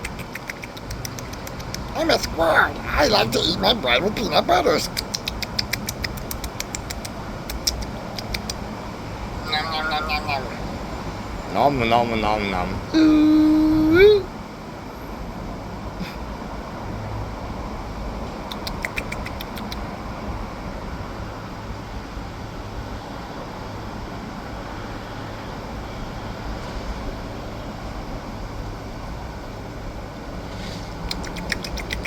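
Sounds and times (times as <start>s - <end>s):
rapid high ticks: 0.0s - 8.7s, 18.5s - 19.9s, 31.1s - 32.0s.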